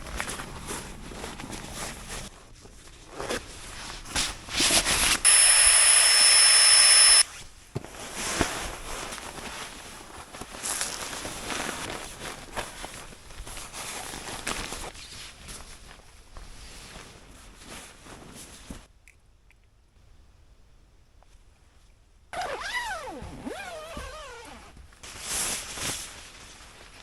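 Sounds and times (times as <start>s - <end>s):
loud hiss with high whistle: 5.2s - 7.3s.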